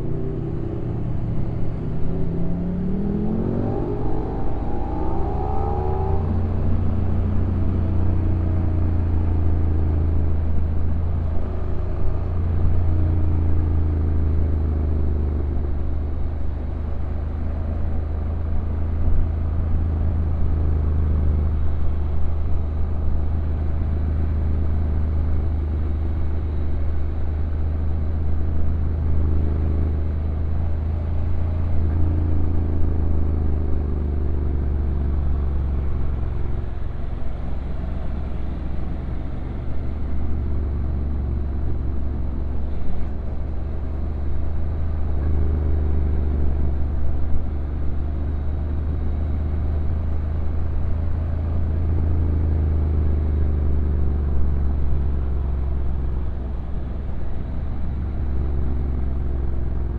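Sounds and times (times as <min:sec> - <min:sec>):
motorcycle engine rumble: 0:15.7 - 0:59.9.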